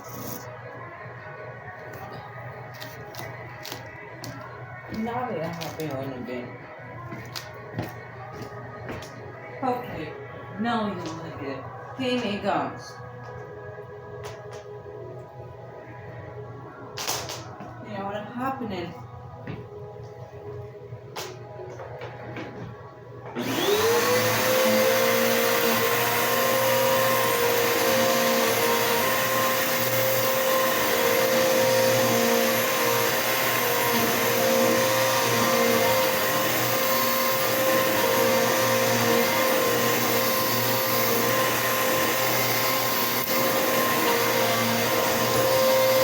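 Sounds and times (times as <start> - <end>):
vacuum cleaner motor whine: 23.2 - 46.0.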